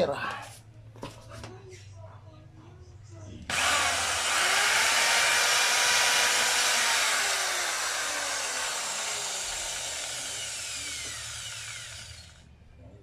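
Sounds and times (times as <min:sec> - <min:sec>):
electric drill boring into wood: 0:03.5 - 0:12.5.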